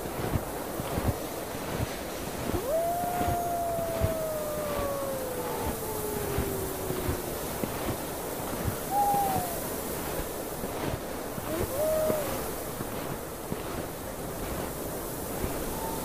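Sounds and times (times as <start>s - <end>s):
wind blowing: 2.3s - 10.2s, 11.2s - 13.4s, 15.1s - 16.0s
wolf howls: 2.4s - 9.8s, 11.4s - 12.6s, 15.5s - 16.0s.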